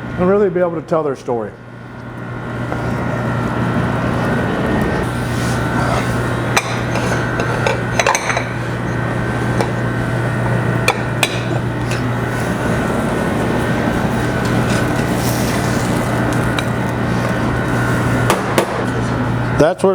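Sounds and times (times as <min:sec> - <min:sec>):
low machine hum: 0:00.0 - 0:19.9
utensils and dishes clinking: 0:03.9 - 0:19.1.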